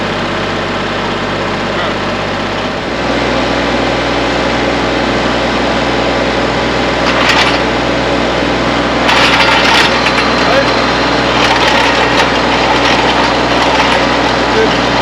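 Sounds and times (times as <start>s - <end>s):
tractor engine running: 0.0s - 15.0s
auger scraping through soil: 9.0s - 15.0s.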